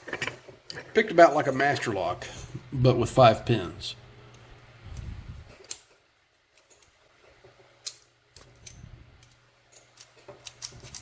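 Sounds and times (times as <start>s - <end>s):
metallic clicks of lock-picking tools: 7.8s - 11.0s.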